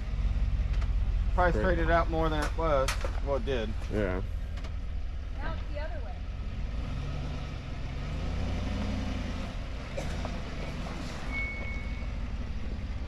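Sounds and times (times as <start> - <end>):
vehicle engine rumbling: 0.0 - 13.0
high-pitched squeak: 11.1 - 12.2.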